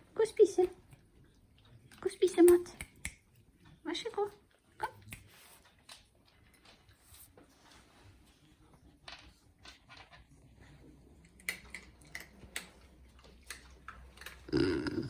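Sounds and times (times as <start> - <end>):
dog crunching food: 11.2 - 14.6.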